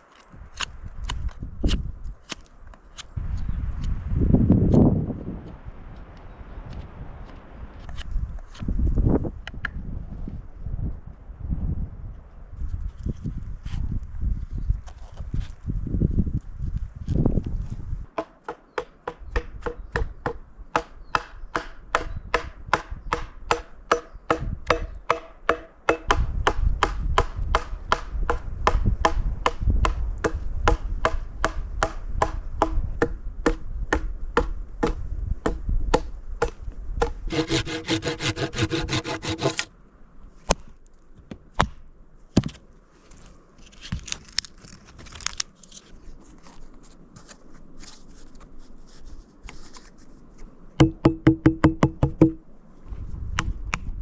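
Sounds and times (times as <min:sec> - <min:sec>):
hand saw cutting wood: 0:37.3 - 0:39.7
scattered knocks: 0:50.8 - 0:52.4.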